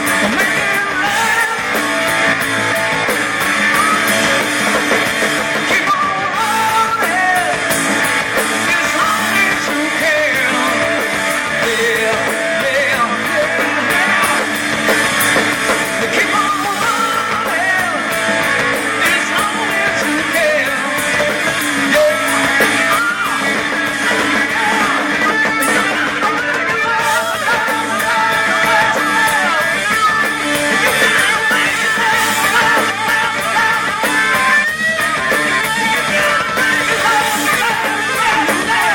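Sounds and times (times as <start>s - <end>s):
electric guitar lead bending: 0.0s - 38.9s
rock band playing: 0.0s - 38.9s.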